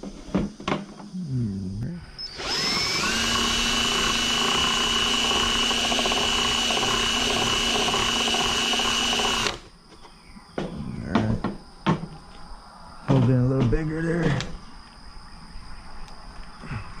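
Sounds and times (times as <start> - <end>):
electric drill boring: 2.2 - 9.7.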